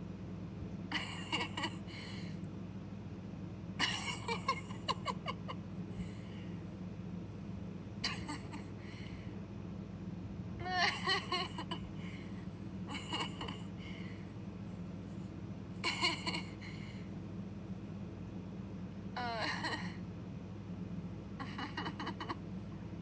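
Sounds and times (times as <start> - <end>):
steady low hum: 0.0 - 23.0
girl giggling: 3.8 - 5.6, 8.0 - 8.8, 10.6 - 11.8, 19.2 - 19.9, 21.4 - 22.4.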